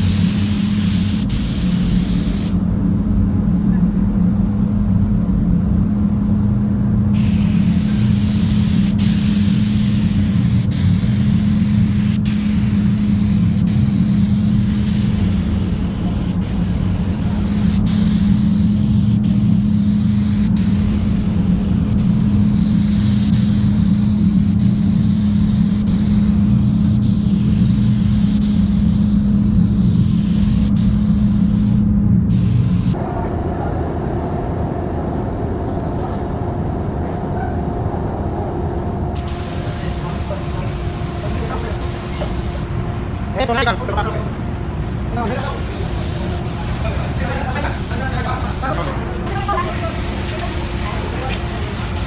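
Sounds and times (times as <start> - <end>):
paint spray gun hissing: 0.0 - 2.7, 7.1 - 33.0, 39.2 - 52.0
steady low hum: 0.0 - 52.0.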